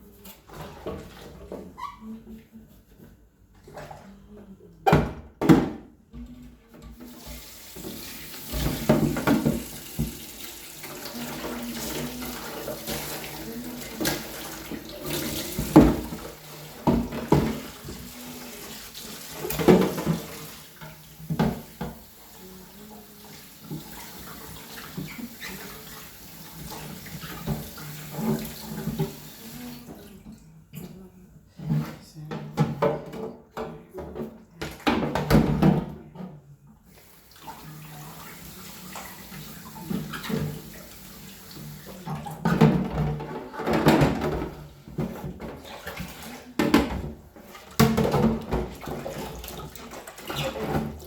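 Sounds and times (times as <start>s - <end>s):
objects knocking in sink: 7.0s - 10.3s, 14.0s - 18.2s, 19.4s - 20.4s, 32.4s - 36.2s, 42.1s - 51.0s
tap running into sink: 7.0s - 13.2s.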